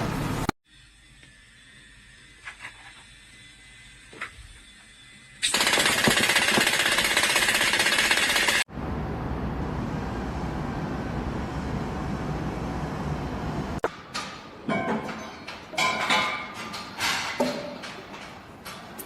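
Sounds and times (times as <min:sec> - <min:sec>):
rapid mechanical hammering: 0:05.4 - 0:08.7
low rumble of machinery: 0:08.7 - 0:13.8.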